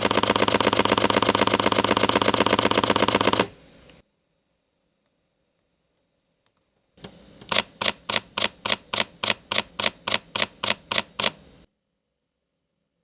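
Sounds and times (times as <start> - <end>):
camera shutter burst clicks: 0.0 - 3.6, 7.4 - 11.7.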